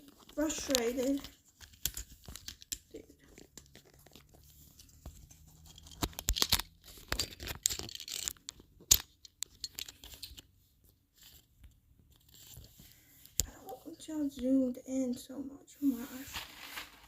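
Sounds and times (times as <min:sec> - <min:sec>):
scraping rustles: 0:15.9 - 0:17.0.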